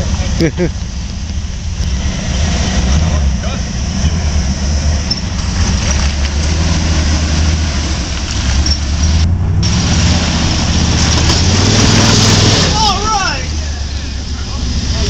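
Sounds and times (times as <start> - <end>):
car engine running at low revs: 0.0 - 15.0.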